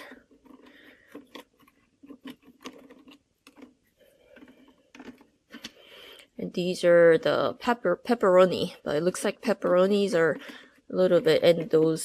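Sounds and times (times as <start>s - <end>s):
jerky clicking on plastic trays: 0.0s - 6.2s, 9.4s - 12.0s.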